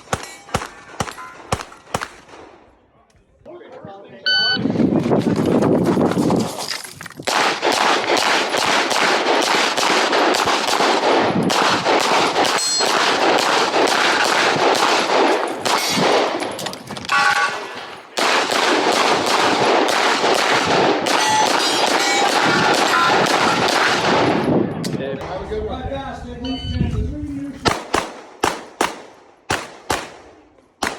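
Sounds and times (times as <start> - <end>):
rapid gunshots: 7.3 - 16.4, 17.2 - 24.4, 27.7 - 30.9.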